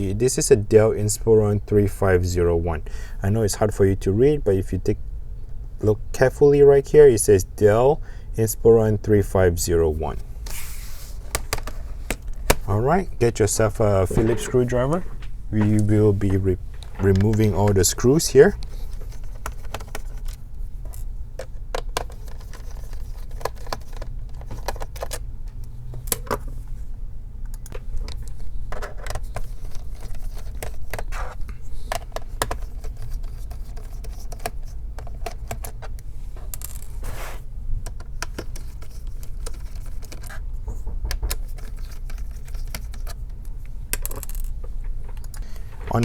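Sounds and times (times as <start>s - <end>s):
steady low hum: 1.1s - 19.5s.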